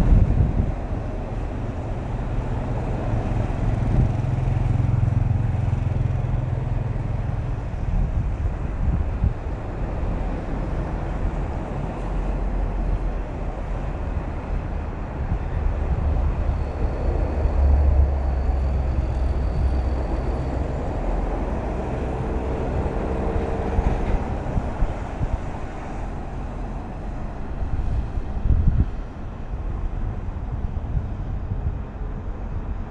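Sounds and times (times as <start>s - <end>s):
traffic rumble of engines and tyres: 0.0s - 32.9s.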